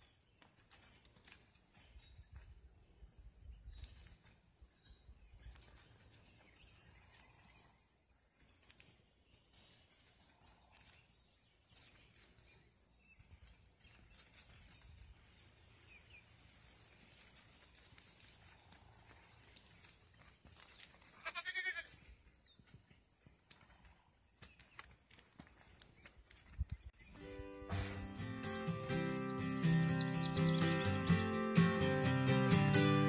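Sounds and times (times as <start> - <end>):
distant goat bleats: 21.2 - 22.0.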